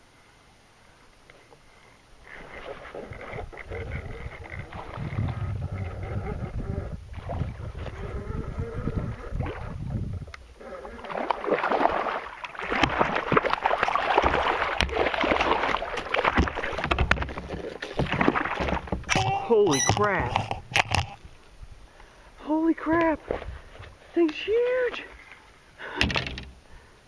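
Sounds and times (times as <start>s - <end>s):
water splashing around a kayak: 1.5s - 21.6s, 22.7s - 26.7s
wind buffeting microphone: 3.0s - 10.6s.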